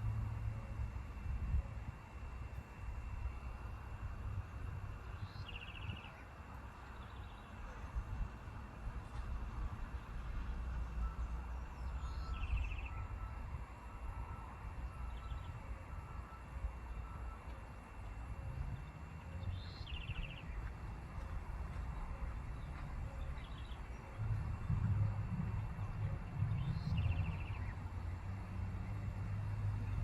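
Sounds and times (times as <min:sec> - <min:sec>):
low rumble: 0:18.3 - 0:30.0.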